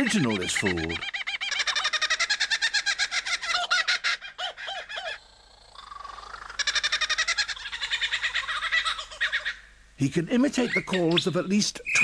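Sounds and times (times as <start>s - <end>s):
kookaburra laughing calls: 0.0s - 9.7s, 10.4s - 12.0s.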